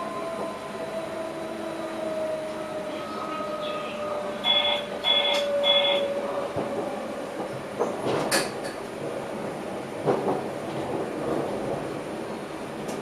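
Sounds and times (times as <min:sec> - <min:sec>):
train running noise: 0:02.8 - 0:13.0.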